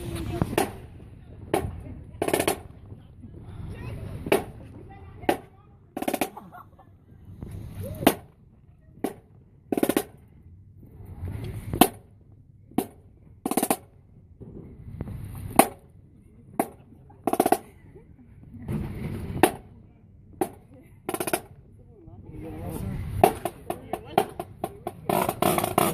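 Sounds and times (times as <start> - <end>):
drumline cadence: 4.1 - 6.6.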